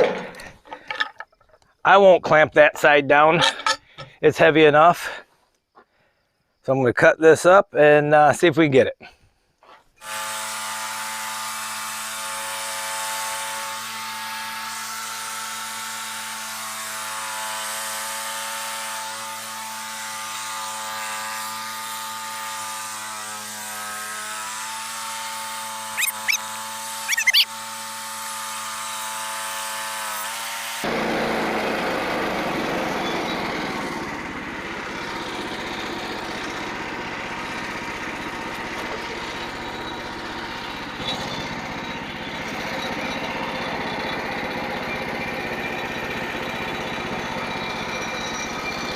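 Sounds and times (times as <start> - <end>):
blade sawing through wood: 25.0 - 27.5.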